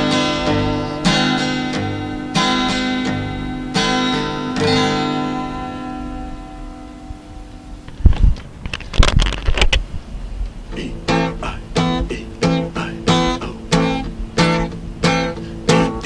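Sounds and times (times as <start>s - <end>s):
guitar knocks and plucks: 0.0s - 7.2s, 10.8s - 16.0s
guitar strumming: 0.0s - 16.0s.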